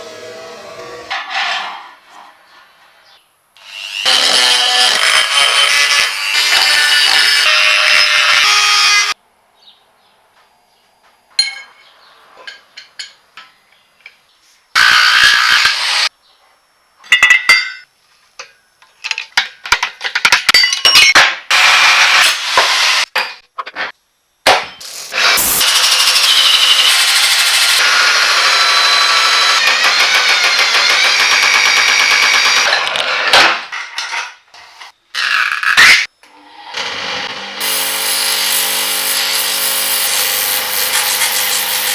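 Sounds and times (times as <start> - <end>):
power tool running: 24.8 - 32.8, 36.3 - 41.9.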